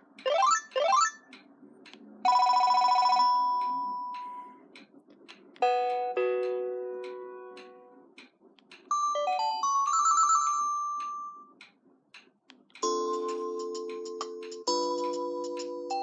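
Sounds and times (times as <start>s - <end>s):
clock ticking faintly: 0.0s - 16.0s
rapid trilling phone ring: 2.3s - 3.6s.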